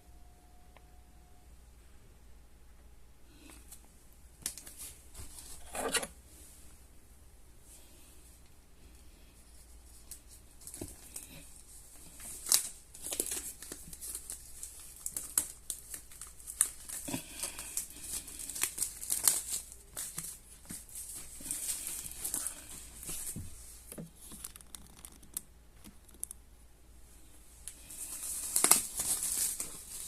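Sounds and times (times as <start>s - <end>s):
packaging crinkling and tearing: 10.1s - 23.4s, 27.7s - 30.0s.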